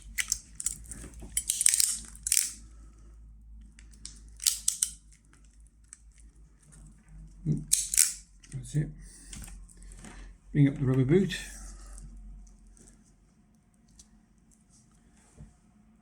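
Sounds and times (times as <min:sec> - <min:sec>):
crimping tool clicks and snaps: 0:00.1 - 0:02.6, 0:03.9 - 0:05.0, 0:07.7 - 0:08.2.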